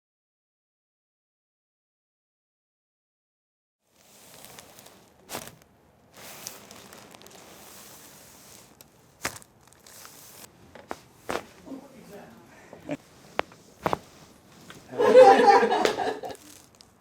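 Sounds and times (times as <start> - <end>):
rustling on a treatment table: 3.9 - 17.0.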